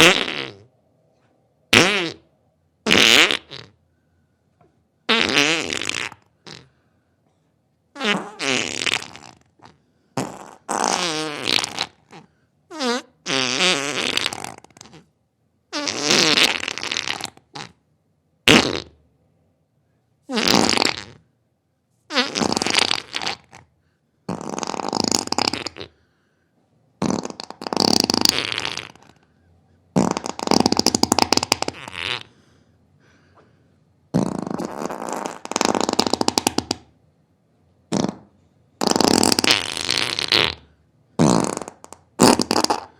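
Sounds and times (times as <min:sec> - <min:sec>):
farts: 0:00.0 - 0:00.7, 0:01.7 - 0:03.8, 0:05.1 - 0:06.7, 0:07.9 - 0:15.1, 0:15.7 - 0:17.8, 0:18.4 - 0:19.0, 0:20.3 - 0:21.3, 0:22.1 - 0:23.7, 0:24.3 - 0:26.0, 0:27.0 - 0:29.3, 0:29.9 - 0:32.3, 0:34.1 - 0:36.9, 0:37.9 - 0:42.9.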